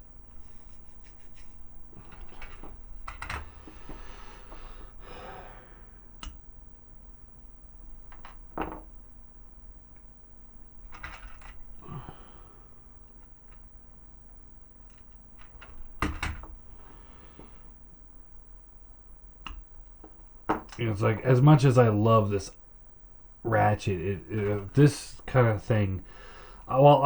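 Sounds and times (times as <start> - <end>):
plastic parts clicking and tapping: 2.0 - 4.0, 8.0 - 9.0, 10.9 - 11.6.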